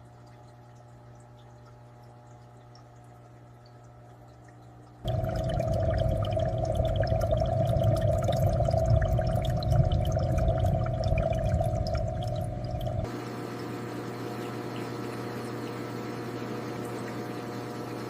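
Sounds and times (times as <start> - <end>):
low steady hum: 0.0 - 13.3
aquarium water bubbling: 0.0 - 18.0.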